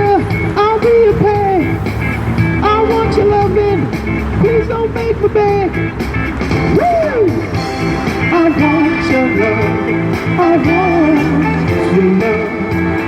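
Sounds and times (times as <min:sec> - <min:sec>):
band accompaniment: 0:00.0 - 0:13.0
person singing pop song: 0:02.6 - 0:05.8, 0:06.6 - 0:13.0.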